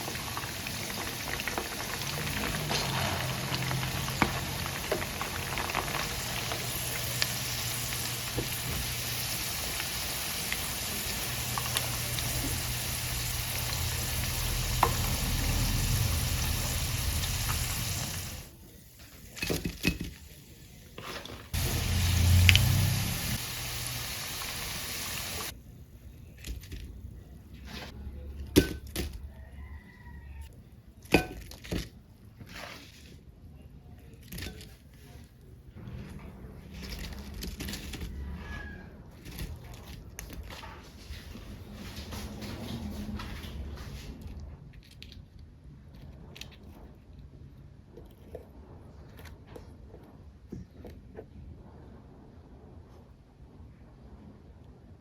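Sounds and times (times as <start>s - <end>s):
food sizzling in hot oil: 0.0s - 18.5s, 21.5s - 25.5s.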